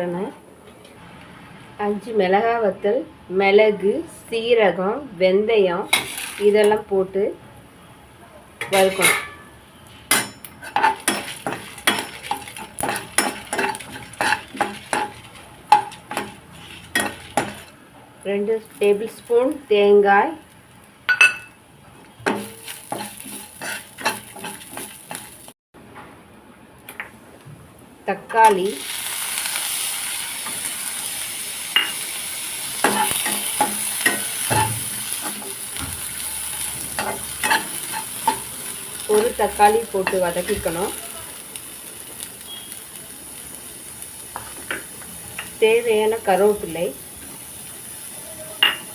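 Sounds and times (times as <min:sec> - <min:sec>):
tomato sizzling in hot oil: 0:05.9 - 0:06.8, 0:10.2 - 0:21.6, 0:22.2 - 0:25.6, 0:28.4 - 0:48.9
spoon scraping spices in a pan: 0:10.1 - 0:17.7, 0:22.2 - 0:25.4, 0:37.0 - 0:41.0.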